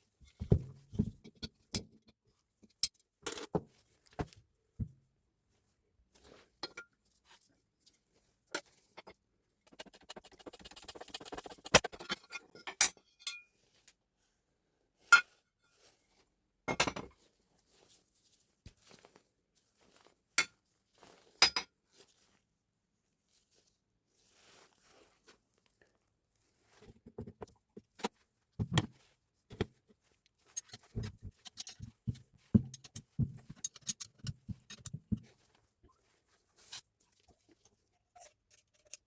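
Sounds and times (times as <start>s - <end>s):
metal parts clinking on workbench: 32.7s - 35.0s.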